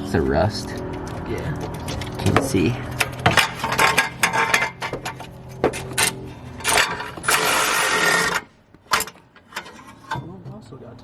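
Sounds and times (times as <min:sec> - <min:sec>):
metal tools clinking: 0:01.7 - 0:10.4
impact wrench burst: 0:05.8 - 0:09.2.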